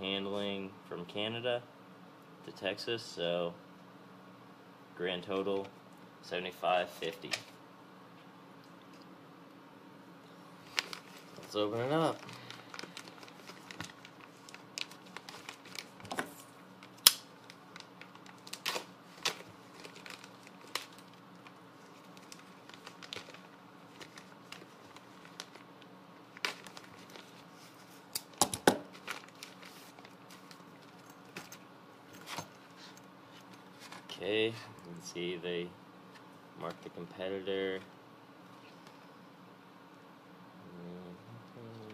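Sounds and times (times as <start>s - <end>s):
packaging crinkling and tearing: 10.6s - 31.4s.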